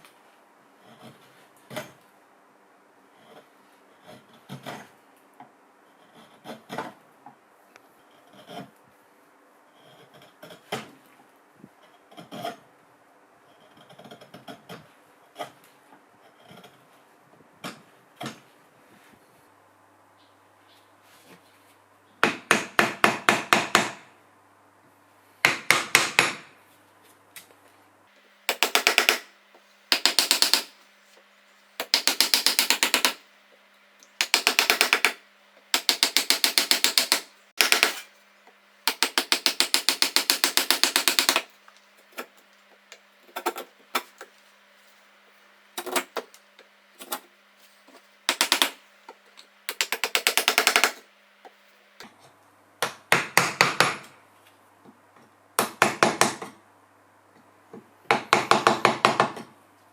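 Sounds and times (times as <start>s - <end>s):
hammer tapping: 28.5s - 30.8s, 31.8s - 33.2s, 34.2s - 38.1s, 38.9s - 41.5s, 45.8s - 46.4s, 47.9s - 51.6s.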